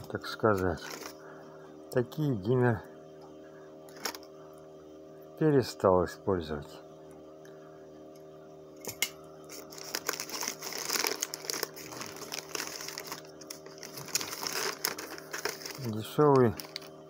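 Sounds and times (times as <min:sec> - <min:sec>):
low hum: 0:00.0 - 0:17.0
plastic packaging crinkling: 0:00.8 - 0:01.2, 0:09.5 - 0:17.0.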